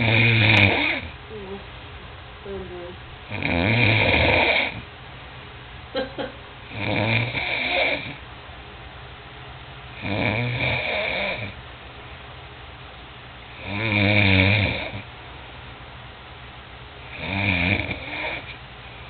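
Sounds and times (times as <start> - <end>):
person snoring loudly: 0.0 - 1.1, 3.3 - 4.8, 6.7 - 8.2, 10.0 - 11.6, 13.6 - 15.0, 17.2 - 18.6.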